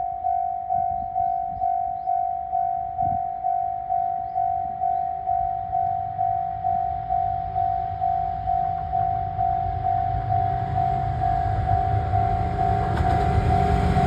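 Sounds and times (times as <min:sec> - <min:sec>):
level-crossing warning bell: 0:00.0 - 0:14.0
low rumble: 0:00.0 - 0:14.0.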